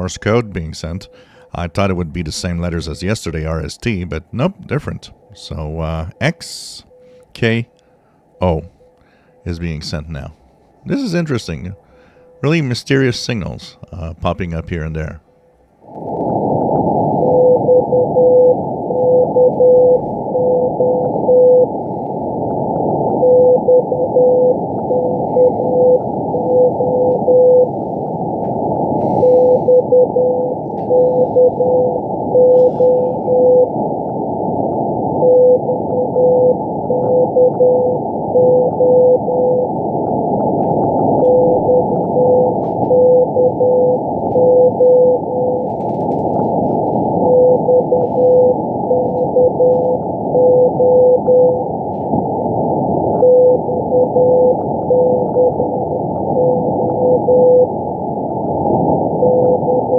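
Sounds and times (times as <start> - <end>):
shortwave radio static: 0.0 - 59.9
morse code tone keying: 17.2 - 52.0, 53.0 - 59.9.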